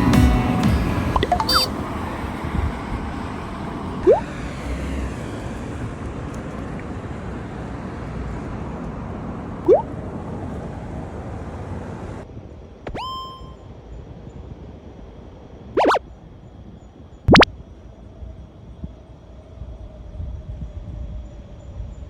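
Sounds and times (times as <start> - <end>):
outdoor background rumble: 0.0 - 13.0.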